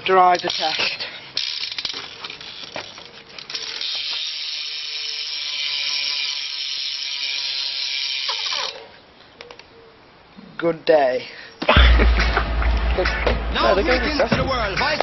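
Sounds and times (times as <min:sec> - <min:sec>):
bicycle hub ticking: 0:00.2 - 0:08.8.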